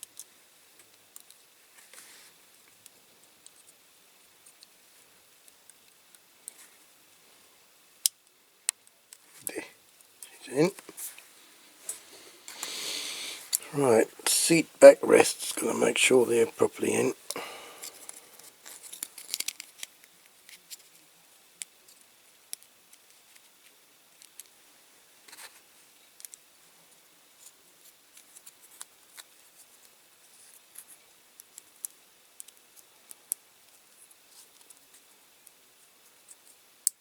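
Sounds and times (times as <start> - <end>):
toy parts clicking and tapping: 18.8 - 19.9, 31.4 - 33.8.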